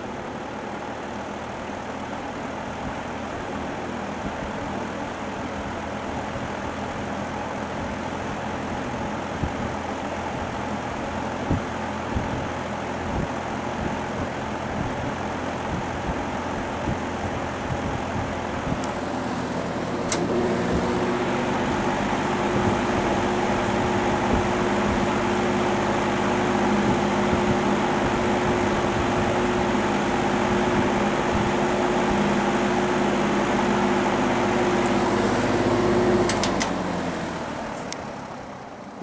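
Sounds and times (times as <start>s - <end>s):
fan rushing air with hum: 0.0s - 39.0s
fan switch click: 18.7s - 22.0s, 34.8s - 35.4s, 36.2s - 36.8s.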